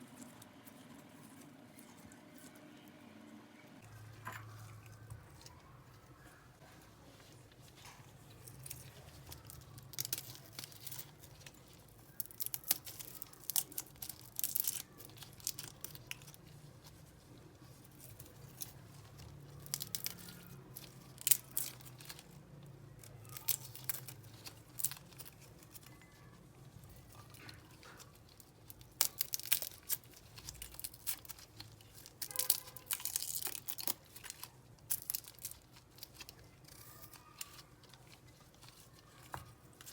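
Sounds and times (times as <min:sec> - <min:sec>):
faint low hum: 0:00.0 - 0:39.9
crisp tearing and crackling: 0:04.5 - 0:39.9.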